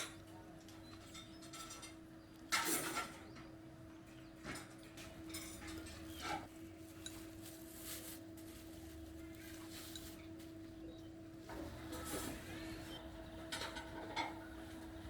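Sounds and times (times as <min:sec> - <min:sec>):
faint clinks and knocks: 0:04.1 - 0:11.0.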